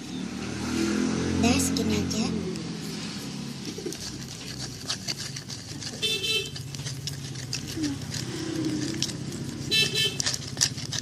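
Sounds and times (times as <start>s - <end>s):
road traffic: 0.0s - 11.0s
vehicle horn toot: 6.0s - 6.6s, 9.7s - 10.2s.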